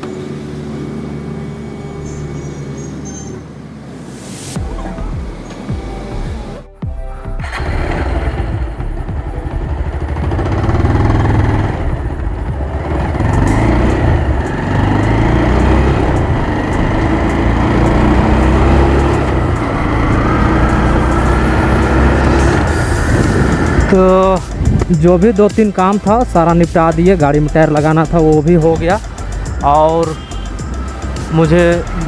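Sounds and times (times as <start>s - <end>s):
road noise: 0.0s - 6.8s, 7.4s - 32.0s
motorcycle engine running: 7.4s - 32.0s.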